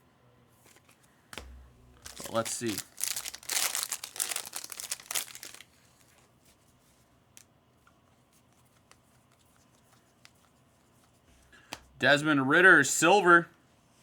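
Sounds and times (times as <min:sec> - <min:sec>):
foil wrapper tearing and crinkling: 0:02.0 - 0:06.1.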